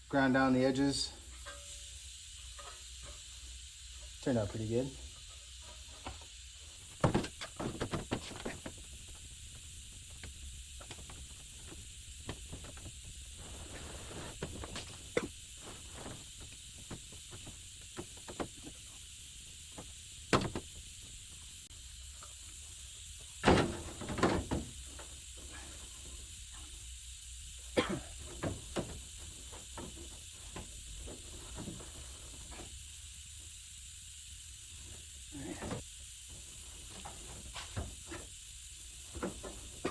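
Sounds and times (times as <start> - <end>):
steady high hiss: 0.0 - 39.9
knocks and light clanks: 6.9 - 13.8, 19.7 - 20.8.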